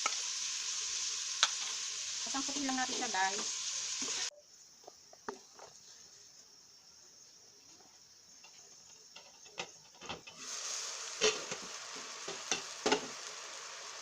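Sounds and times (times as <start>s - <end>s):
meat sizzling in hot oil: 0.0s - 4.3s, 10.3s - 14.0s.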